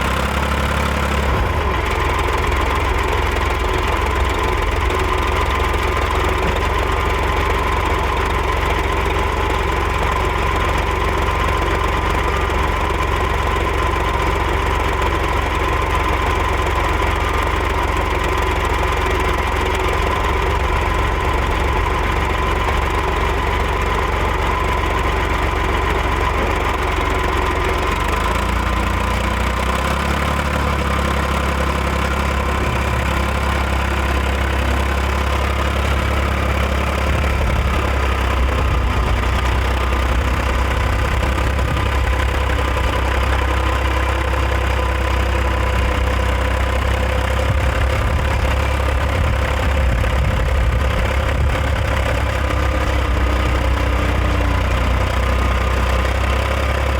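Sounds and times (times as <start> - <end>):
backhoe engine running: 0.0 - 56.9.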